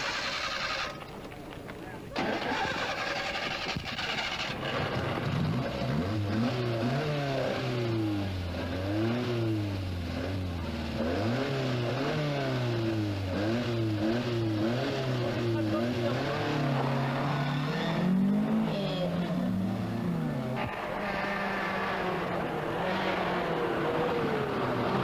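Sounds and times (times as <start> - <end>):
rally car engine accelerating: 2.1 - 25.0
rush of noise: 9.6 - 25.0.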